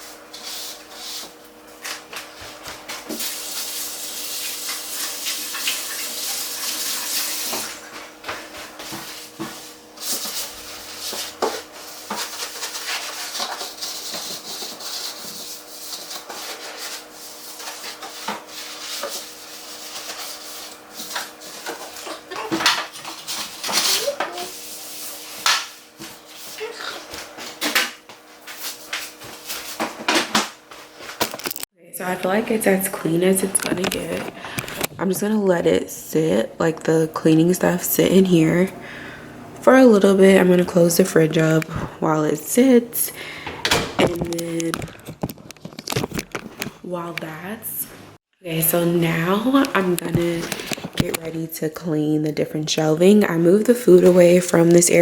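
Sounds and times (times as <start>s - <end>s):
scrubbing inside a fridge: 0.0s - 31.2s
clinks and knocks of items: 31.2s - 31.7s.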